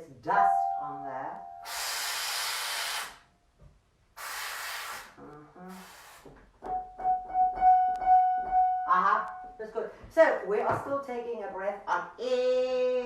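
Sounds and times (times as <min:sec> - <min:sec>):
piano playing repeated chords: 0:00.3 - 0:01.9, 0:06.7 - 0:09.6
forceful hissing breath: 0:01.6 - 0:03.3, 0:04.2 - 0:06.4.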